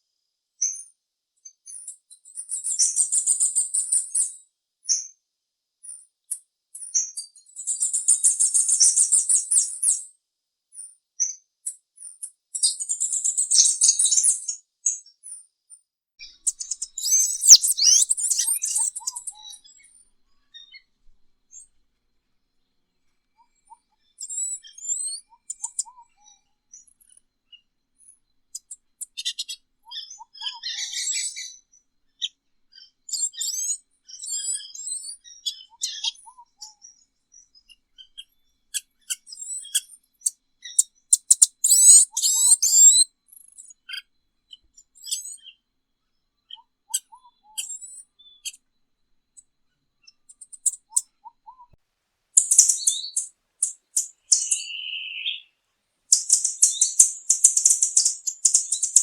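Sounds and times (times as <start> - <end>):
birds chirping and twittering: 16.2 - 21.8, 23.3 - 45.6, 52.4 - 55.5, 56.1 - 59.0.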